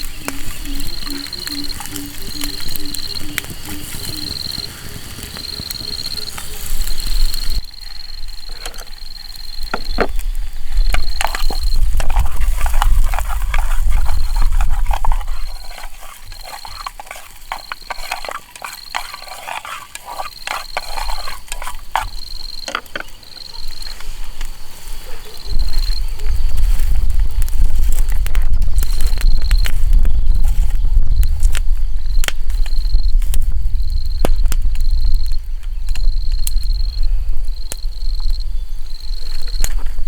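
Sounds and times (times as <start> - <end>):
wind rumble on microphone: 0.0 - 16.6, 24.1 - 40.0
insect trilling: 0.0 - 24.0.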